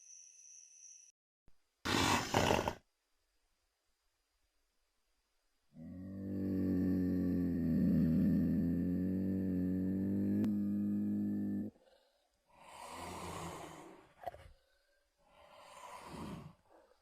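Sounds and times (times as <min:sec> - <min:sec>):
low rumbling growl: 0:05.8 - 0:11.8
slow creature breaths: 0:06.1 - 0:17.0.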